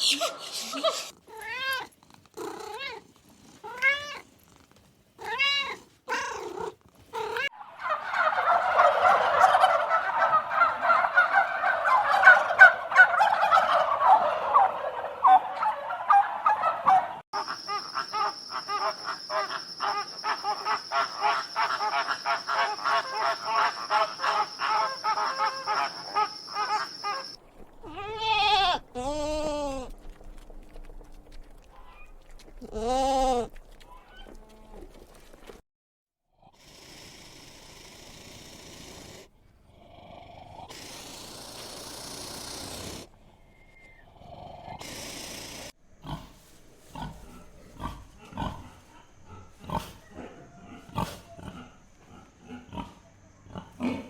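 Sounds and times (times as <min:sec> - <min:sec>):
cat meowing: 0:00.8 - 0:04.3, 0:05.2 - 0:07.5
animal chattering calls: 0:17.4 - 0:27.4
rapid clicking animal calls: 0:17.4 - 0:27.4
goat bleating: 0:27.8 - 0:29.9, 0:32.6 - 0:33.5.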